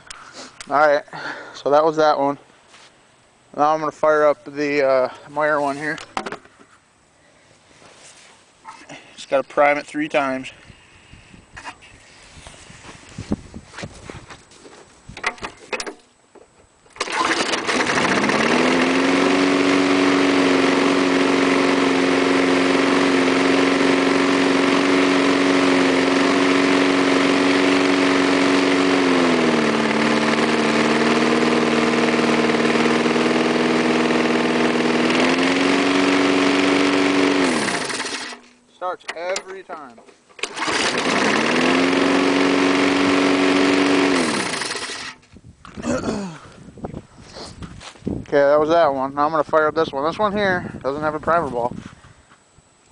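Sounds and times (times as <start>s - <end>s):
lawn mower engine running: 16.9s - 45.3s.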